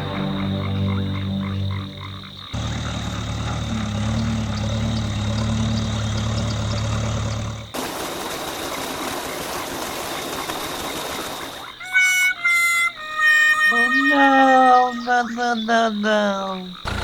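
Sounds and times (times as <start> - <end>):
tractor engine idling: 1.6 - 12.0, 16.8 - 17.0.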